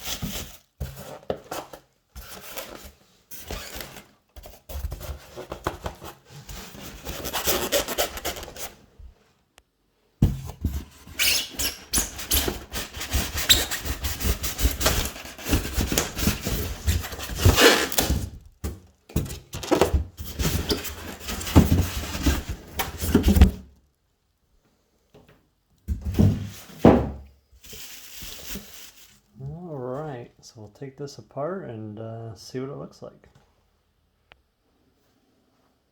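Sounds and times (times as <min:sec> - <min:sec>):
cardboard box scraping and rustling: 0:00.0 - 0:08.8, 0:10.2 - 0:18.4, 0:19.2 - 0:23.6, 0:26.1 - 0:29.2.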